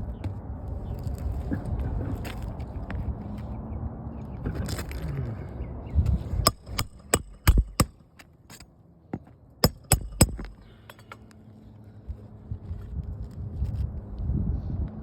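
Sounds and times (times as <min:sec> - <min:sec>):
hammer driving nails into shingles: 0:06.4 - 0:08.6, 0:09.6 - 0:11.2.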